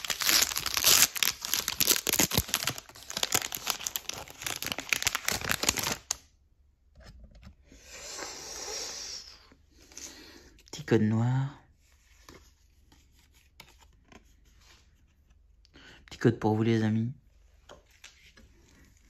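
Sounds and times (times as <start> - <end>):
foil pack tearing and crinkling: 0.0 - 6.2.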